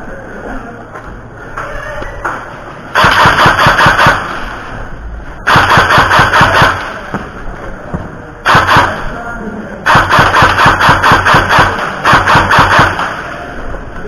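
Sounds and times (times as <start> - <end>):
airsoft gun full-auto bursts: 2.9 - 4.6, 5.4 - 7.1, 8.5 - 9.1, 9.8 - 13.4.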